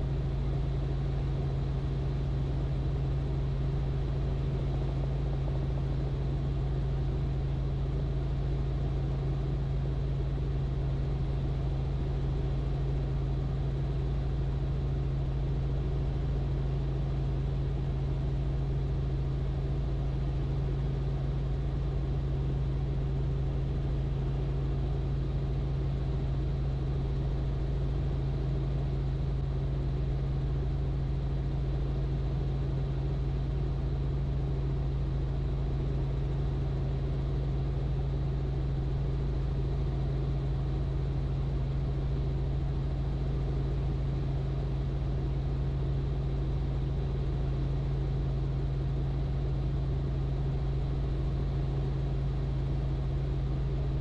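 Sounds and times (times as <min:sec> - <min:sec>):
helicopter engine and rotor drone: 0:00.0 - 0:54.0.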